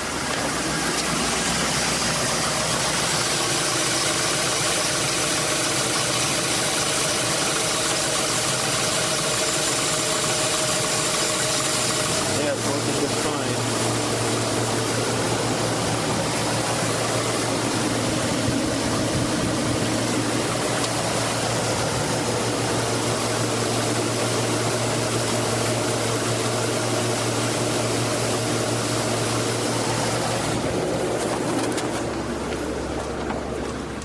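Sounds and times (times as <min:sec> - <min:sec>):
car engine idling hum: 0:00.0 - 0:34.0
air blower rushing: 0:11.1 - 0:34.0.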